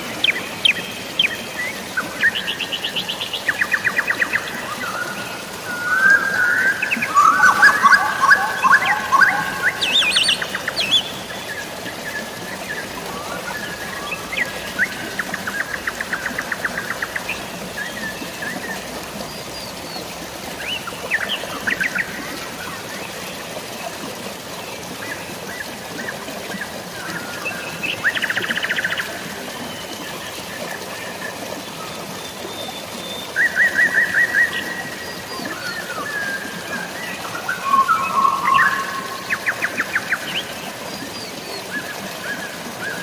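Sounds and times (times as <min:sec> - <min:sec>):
drizzling rain: 0:00.0 - 0:43.0
falling water: 0:00.0 - 0:43.0
birds trilling: 0:03.4 - 0:11.3, 0:37.2 - 0:40.5.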